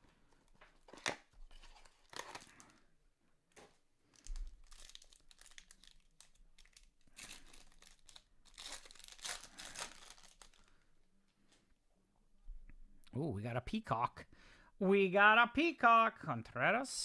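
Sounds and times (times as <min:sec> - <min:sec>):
card pack wrappers crinkling: 0:00.3 - 0:02.8, 0:03.5 - 0:10.8.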